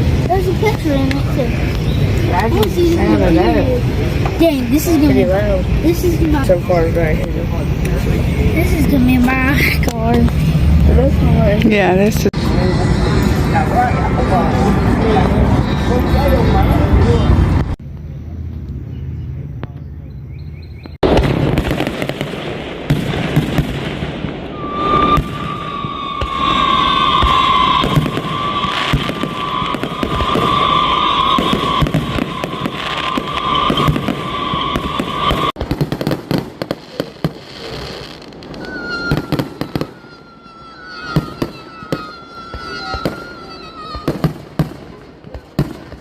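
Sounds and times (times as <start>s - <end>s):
firework whistles: 0.0s - 6.8s, 21.0s - 46.0s
fireworks crackling and popping: 0.0s - 17.8s, 20.9s - 46.0s
sharp firework bangs: 21.0s - 46.0s.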